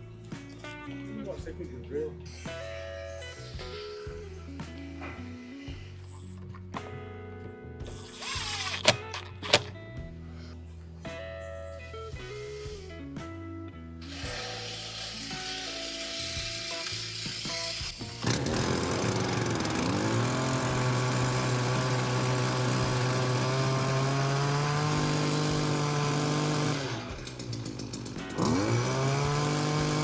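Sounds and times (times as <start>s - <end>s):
two-stroke engine revving: 14.1s - 30.0s.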